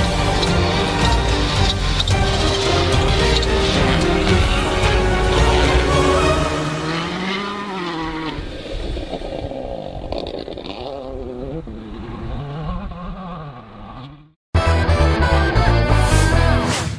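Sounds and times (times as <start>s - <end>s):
rally car engine revving: 0.0s - 8.6s.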